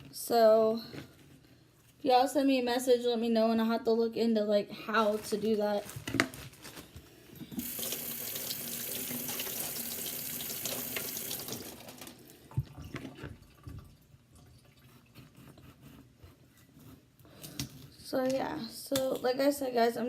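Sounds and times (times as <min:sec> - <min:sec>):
tap running rinsing potatoes: 0:07.6 - 0:15.0.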